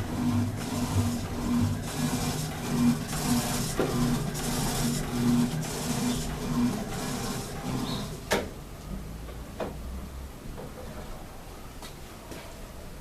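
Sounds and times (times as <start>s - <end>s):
washing machine agitating: 0.0s - 8.5s.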